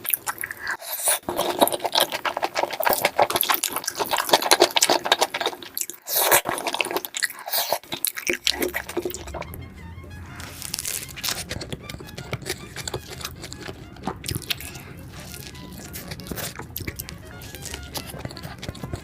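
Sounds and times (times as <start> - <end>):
biting clicks: 0.0 - 9.7, 10.4 - 19.0
crunching and wet chewing: 0.0 - 19.0.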